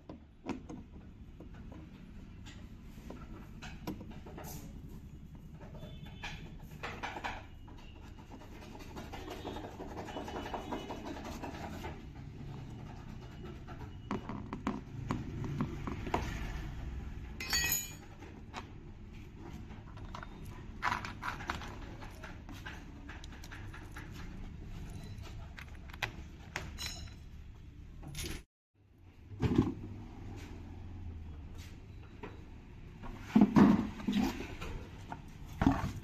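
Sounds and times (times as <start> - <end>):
scraping and rubbing: 7.8 - 14.1
metal clinks and knocks: 17.4 - 18.4, 20.0 - 27.4.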